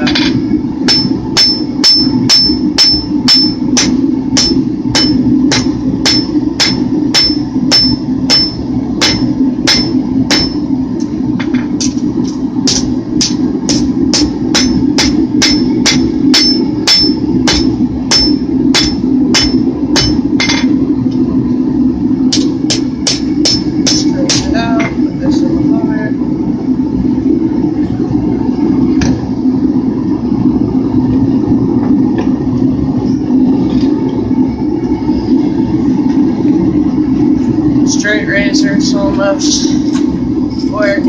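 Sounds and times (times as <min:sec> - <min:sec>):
hammer striking steel on anvil: 0:00.0 - 0:10.7, 0:11.7 - 0:20.7, 0:22.3 - 0:24.5
steady low hum: 0:00.0 - 0:41.0.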